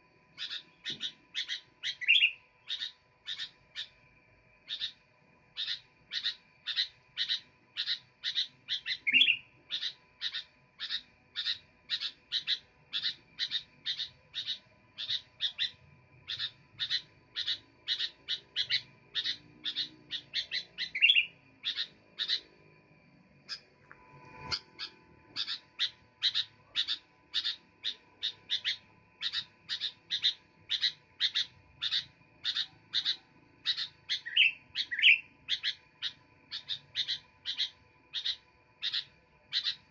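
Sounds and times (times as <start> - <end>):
bird chirping rapidly: 0.4 - 4.0, 4.6 - 22.8, 24.4 - 39.9
rising bird call: 5.6 - 22.6, 24.4 - 35.8.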